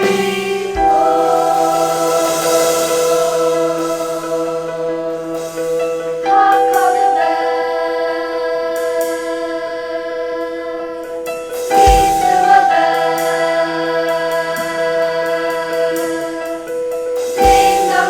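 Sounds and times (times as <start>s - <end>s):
choir singing held chords: 0.0s - 18.0s.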